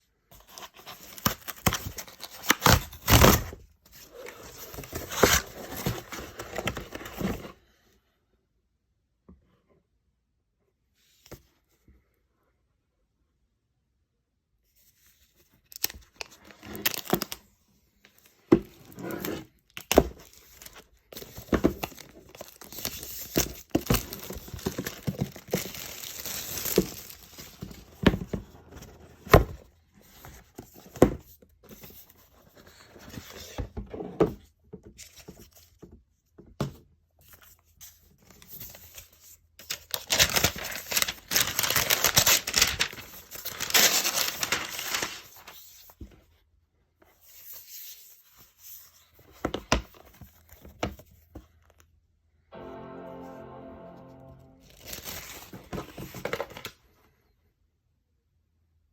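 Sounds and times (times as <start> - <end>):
cardboard and paper tearing: 39.8 - 45.3.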